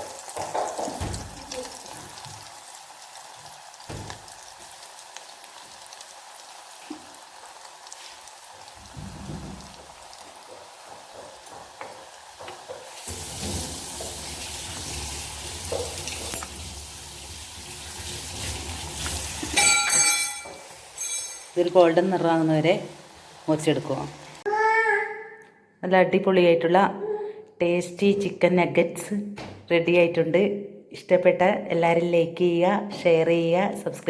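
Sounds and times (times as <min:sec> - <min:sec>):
nuggets sizzling in hot oil: 0:00.0 - 0:24.5.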